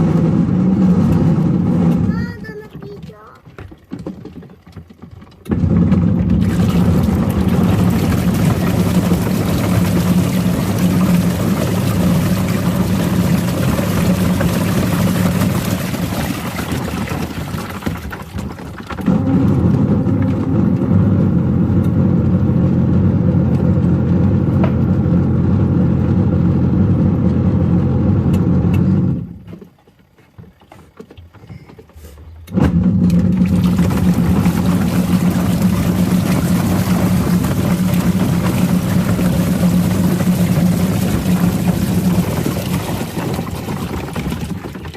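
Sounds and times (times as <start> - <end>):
washing machine running: 0.0 - 44.9.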